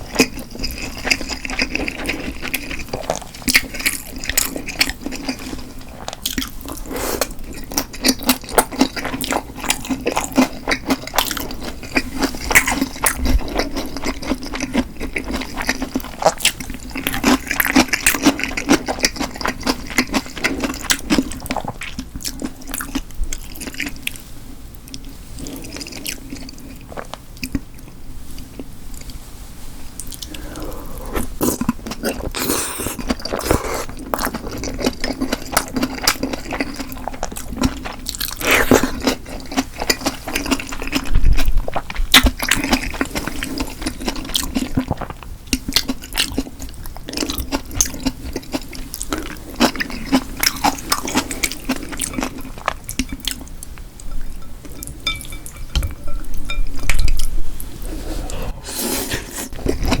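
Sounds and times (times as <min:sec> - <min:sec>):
chewing with wet mouth sounds: 0:00.0 - 0:24.2, 0:24.8 - 0:29.2, 0:30.0 - 0:57.3
steady low hum: 0:30.0 - 0:34.4.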